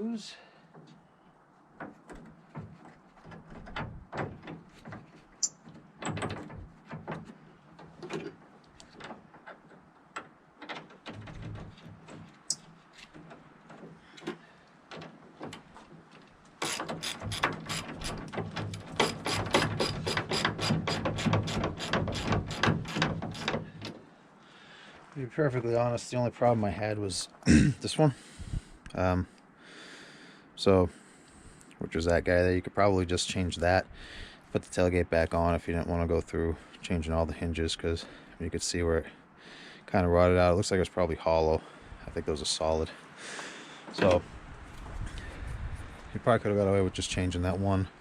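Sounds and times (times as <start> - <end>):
parts clicking and knocking: 1.8 - 24.0, 43.9 - 44.3
ratchet wrench ratcheting: 16.6 - 23.5.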